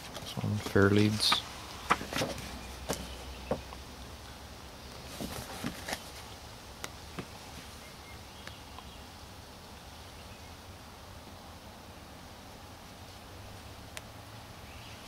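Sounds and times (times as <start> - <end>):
paper pages turning: 0.0 - 3.1, 5.0 - 6.3.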